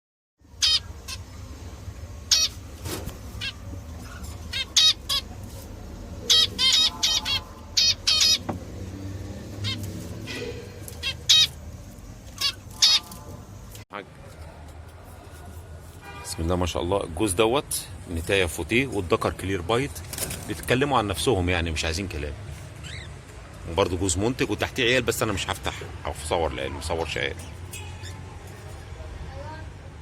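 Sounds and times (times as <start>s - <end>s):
budgerigars squawking and chirping: 0.6s - 1.4s, 2.3s - 2.6s, 3.3s - 5.6s, 6.2s - 8.6s, 9.5s - 11.6s, 12.3s - 13.2s, 22.7s - 23.2s.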